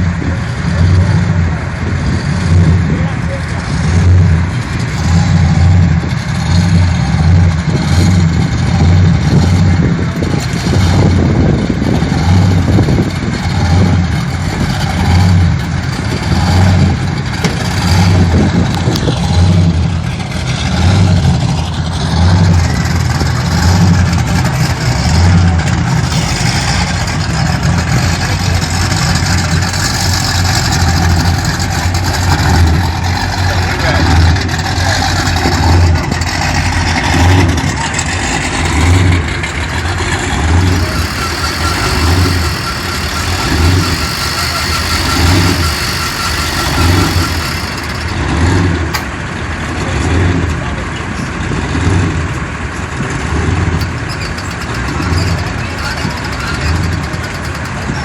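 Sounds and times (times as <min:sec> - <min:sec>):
engine rumbling: 0:00.0 - 0:58.0.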